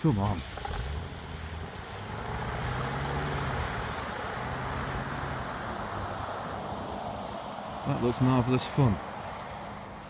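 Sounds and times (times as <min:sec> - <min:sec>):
water washing against vehicle: 0:00.0 - 0:07.8
car engine running: 0:00.4 - 0:02.4.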